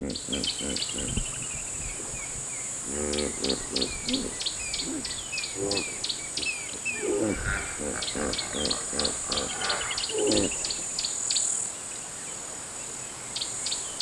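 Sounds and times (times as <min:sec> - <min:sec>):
hippos calling: 0:00.0 - 0:11.0
bird chirping: 0:00.0 - 0:11.2
high insect drone: 0:00.0 - 0:11.6.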